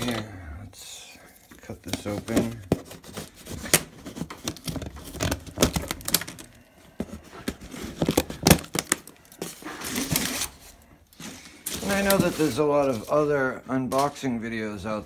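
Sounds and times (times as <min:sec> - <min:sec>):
cardboard and packing crinkling: 0:01.5 - 0:14.4
packing tape tearing: 0:02.8 - 0:06.6, 0:07.7 - 0:10.6.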